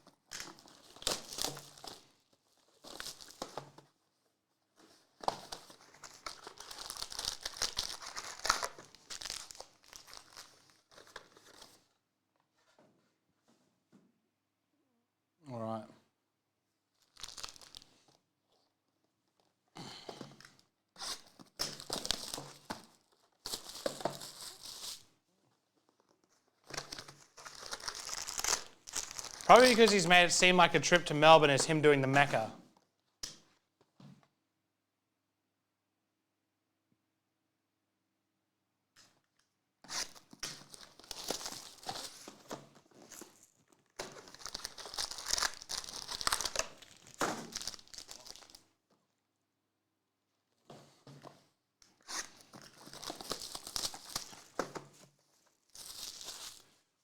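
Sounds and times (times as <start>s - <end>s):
card packaging tearing and crinkling: 6.1s - 10.5s, 27.4s - 30.2s, 44.2s - 48.6s.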